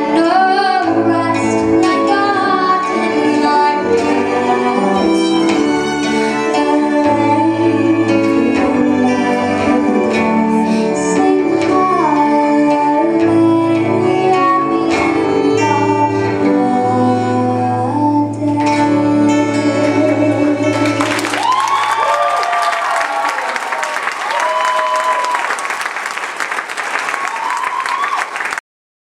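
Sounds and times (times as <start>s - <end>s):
fiddle playing: 0.0s - 22.2s
audience applause: 20.7s - 28.6s.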